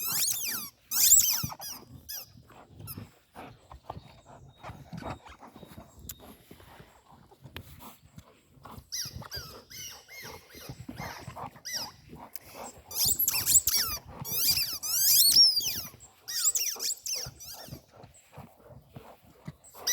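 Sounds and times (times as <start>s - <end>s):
high sliding squeaks: 0.0s - 2.2s, 12.9s - 17.8s.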